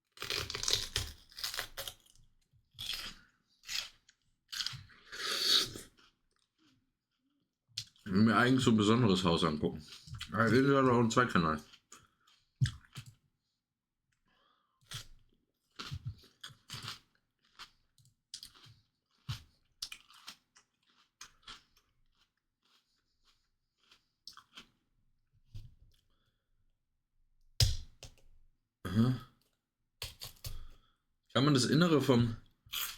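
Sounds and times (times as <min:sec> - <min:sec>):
person crunching raw pepper: 0:00.1 - 0:06.8, 0:14.8 - 0:24.8, 0:29.4 - 0:30.8.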